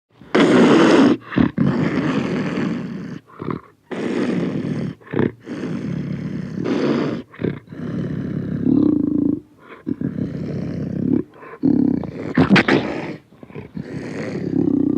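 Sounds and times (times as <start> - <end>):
tiger snarls: 0.2 - 14.9
tiger roaring and growling: 0.7 - 14.9.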